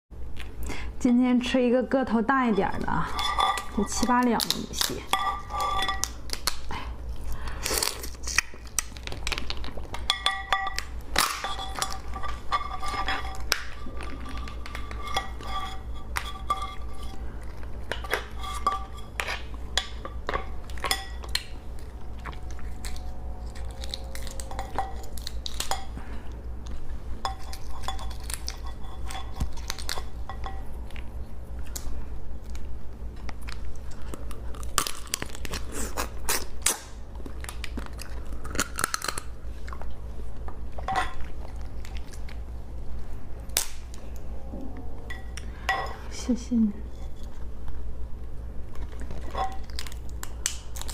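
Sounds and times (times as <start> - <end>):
dishes and utensils clinking: 2.4 - 6.2, 9.4 - 21.5, 22.9 - 26.0, 27.2 - 31.0, 40.8 - 41.4, 45.0 - 46.2.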